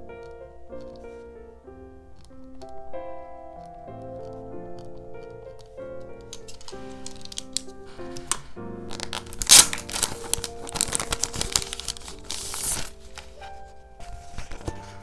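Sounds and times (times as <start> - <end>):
gentle background music: 0.0 - 15.0
paper rustling and crinkling: 6.3 - 15.0.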